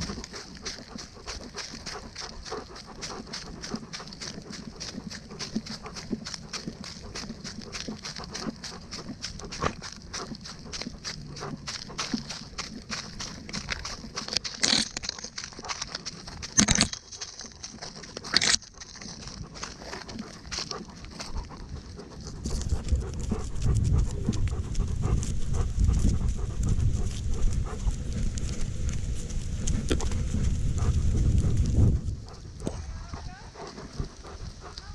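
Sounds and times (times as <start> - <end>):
dog panting: 0.0 - 34.9
low rumbling noise: 19.3 - 34.9.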